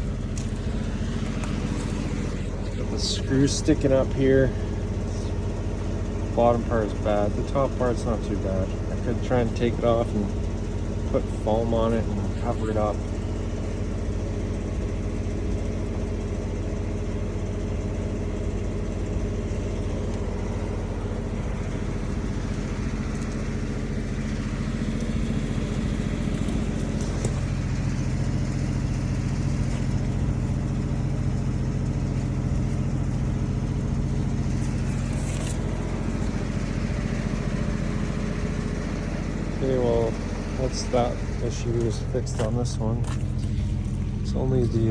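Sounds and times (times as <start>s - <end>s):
construction machine engine idling: 0.0s - 44.9s.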